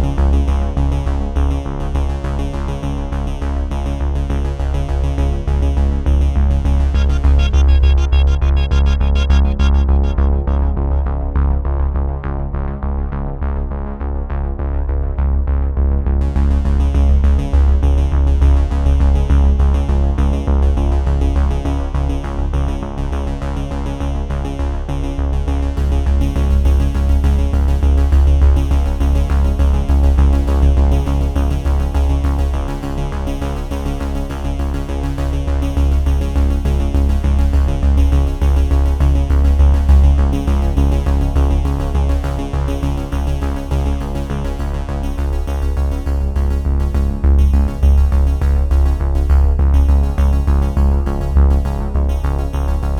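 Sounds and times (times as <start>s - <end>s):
heavy steady bass: 0.0s - 52.9s
electronic music with synthesizer: 6.0s - 11.8s.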